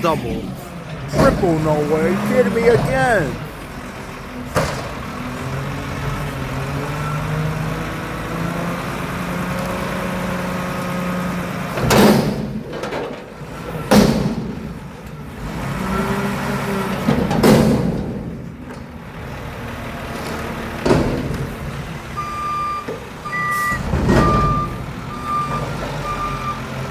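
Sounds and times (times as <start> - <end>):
garbage truck diesel engine running: 0.0 - 11.6.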